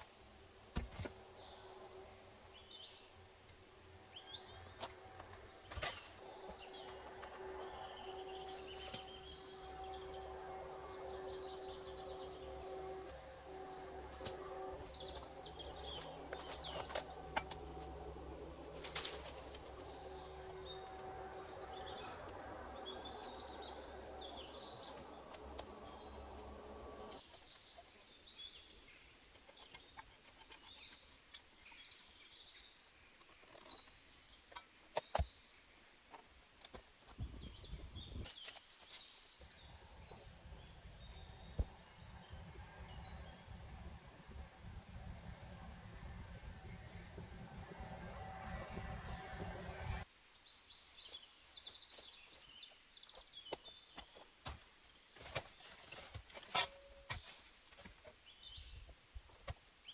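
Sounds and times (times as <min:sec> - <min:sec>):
low steady hum: 0:00.0 - 0:31.8, 0:37.1 - 0:50.1.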